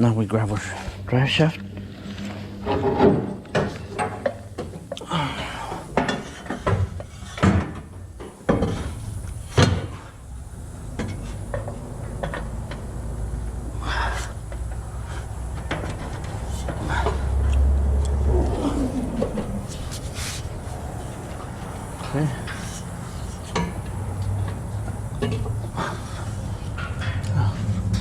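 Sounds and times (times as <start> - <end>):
steady low rumble: 0.0 - 28.0
metallic clanks and knocks: 1.6 - 5.0, 10.9 - 13.1.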